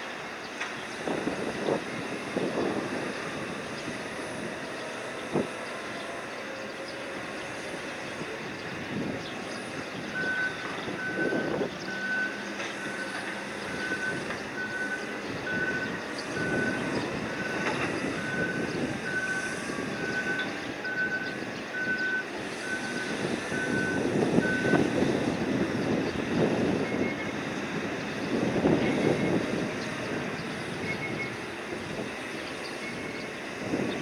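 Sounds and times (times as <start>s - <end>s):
machinery rumble: 0.0s - 34.0s
wind: 0.0s - 34.0s
electronic warning beeper: 9.7s - 24.9s.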